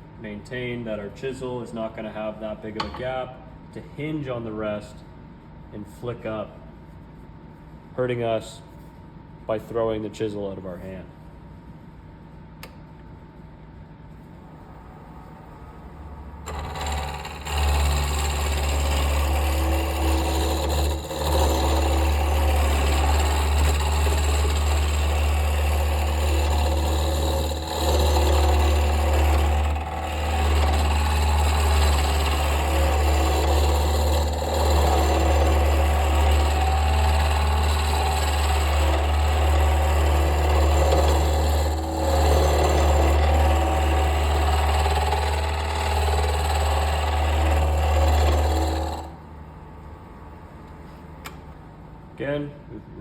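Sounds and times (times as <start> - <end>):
wood lathe motor hum: 16.3 - 49.2
gouge scraping wood: 16.5 - 49.1.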